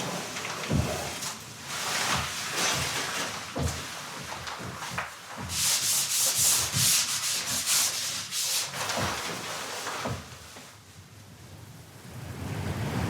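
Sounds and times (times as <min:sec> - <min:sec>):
rasping rubbing strokes: 0:05.5 - 0:10.1.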